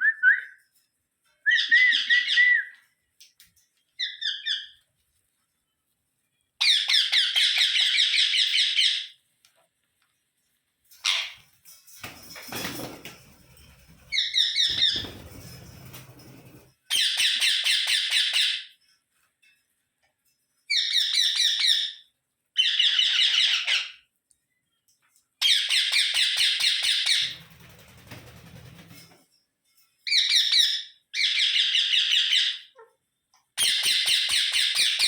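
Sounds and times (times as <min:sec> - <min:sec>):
parakeets calling shrilly: 0:04.0 - 0:04.8, 0:06.6 - 0:09.2, 0:11.0 - 0:11.4, 0:16.9 - 0:18.6, 0:22.6 - 0:24.0, 0:30.1 - 0:32.8, 0:33.6 - 0:35.0.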